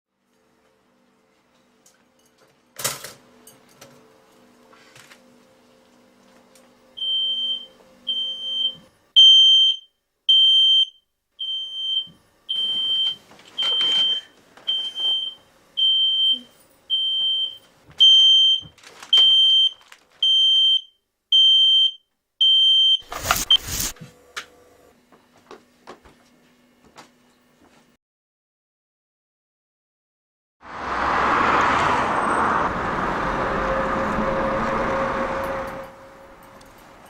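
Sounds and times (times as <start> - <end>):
smoke alarm beeping: 7.0 - 23.9.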